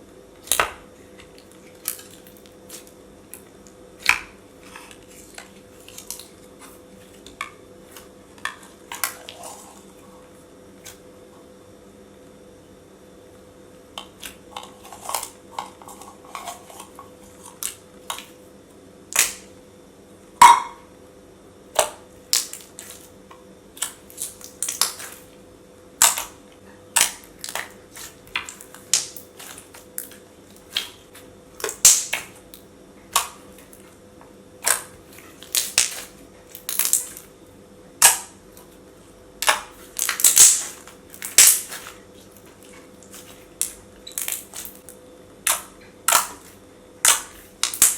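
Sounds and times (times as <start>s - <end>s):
slime squeezed popping and clicking: 39.4s - 41.8s.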